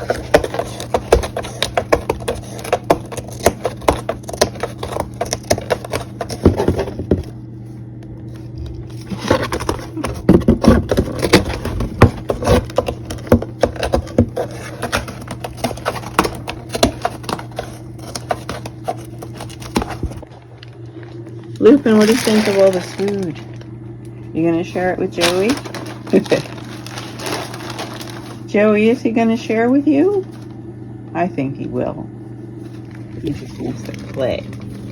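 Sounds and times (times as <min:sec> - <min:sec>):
cardboard boxes rustling and scraping: 0:00.0 - 0:07.4, 0:08.2 - 0:20.4, 0:21.8 - 0:23.3, 0:24.7 - 0:29.1
steady low hum: 0:00.0 - 0:34.9.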